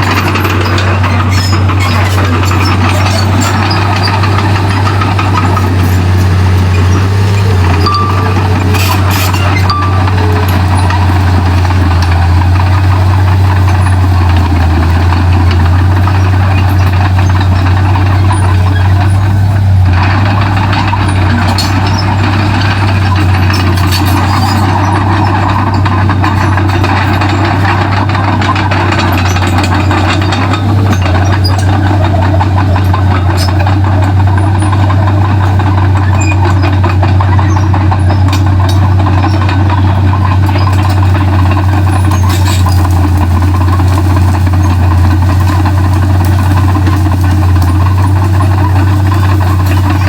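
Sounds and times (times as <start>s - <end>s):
bulldozer diesel engine humming: 0.0s - 50.0s
sharp clicks and cracks: 0.0s - 50.0s.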